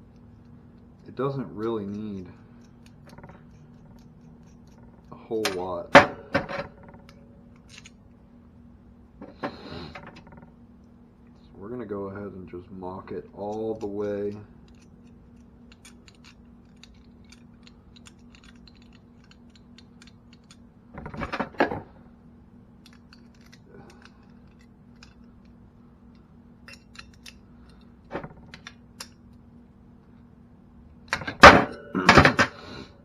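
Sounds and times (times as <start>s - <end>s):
steady low hum: 0.0s - 33.0s
metallic clicks and clanks: 22.8s - 29.4s.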